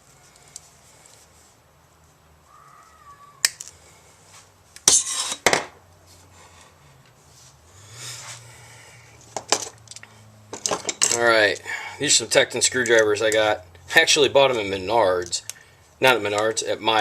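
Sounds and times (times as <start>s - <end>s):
soft rustle: 0.0s - 5.3s, 5.9s - 9.4s
tools clattering: 9.3s - 11.6s.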